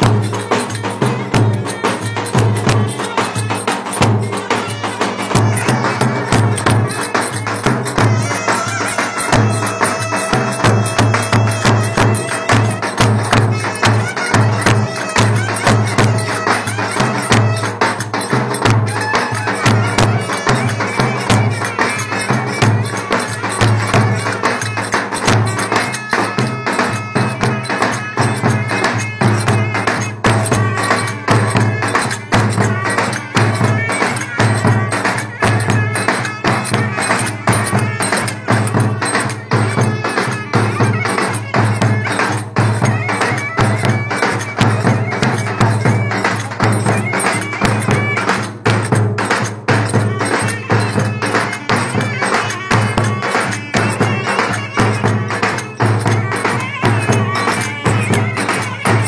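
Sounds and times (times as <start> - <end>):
fast percussion: 0.0 - 59.0
clarinets playing melody: 0.3 - 18.1.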